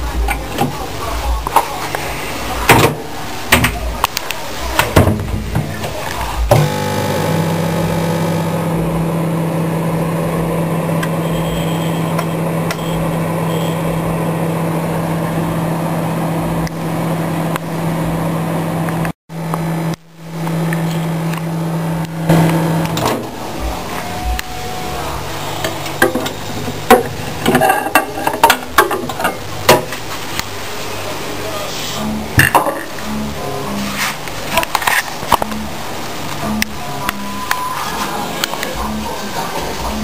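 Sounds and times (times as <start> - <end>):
microwave oven humming: 6.5 - 26.0.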